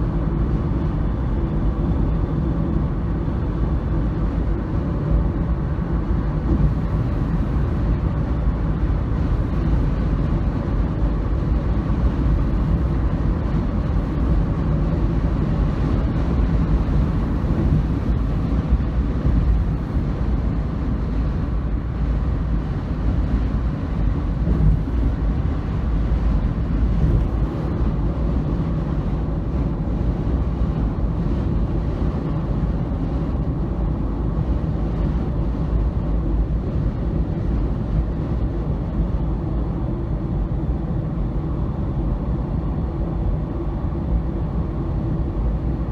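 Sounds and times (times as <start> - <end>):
vehicle rumble in motion: 0.0 - 45.9.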